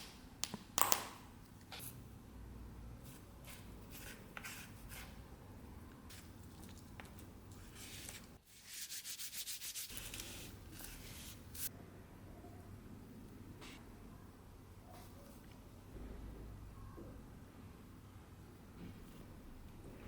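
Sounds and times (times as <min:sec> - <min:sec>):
hand sanding strokes: 0:08.5 - 0:10.0.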